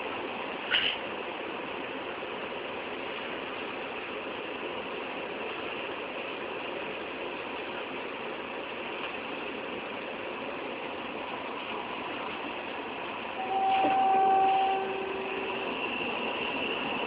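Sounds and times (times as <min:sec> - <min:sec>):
train running: 0:00.0 - 0:17.0
train horn: 0:13.3 - 0:16.4.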